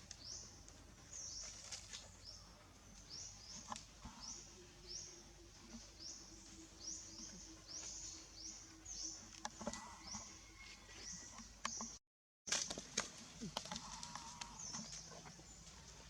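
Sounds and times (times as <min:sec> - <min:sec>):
bird chirping: 0:02.2 - 0:12.0.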